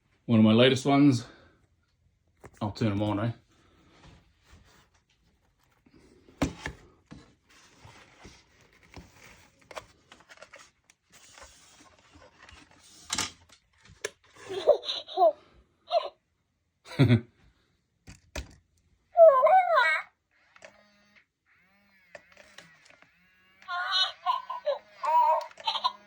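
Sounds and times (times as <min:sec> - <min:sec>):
handling rustle: 0:03.8 - 0:14.6
warbling electronic toy sounds: 0:23.6 - 0:26.0.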